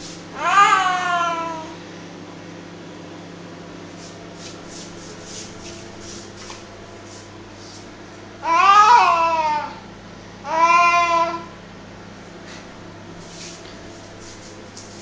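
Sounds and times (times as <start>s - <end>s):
duster rustling: 0.0s - 0.3s, 3.9s - 8.1s, 13.1s - 15.0s
steady low hum: 0.0s - 15.0s.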